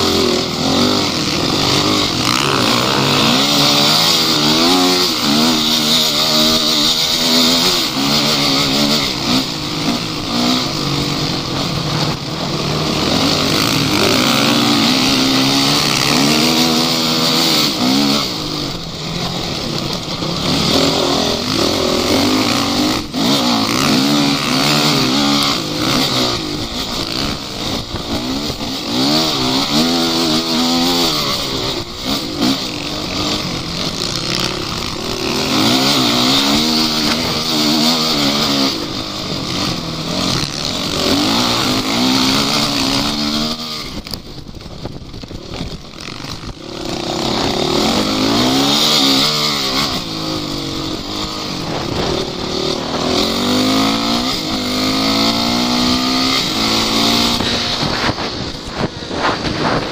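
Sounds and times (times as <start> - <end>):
off-road engine revving: 0.0 - 59.9.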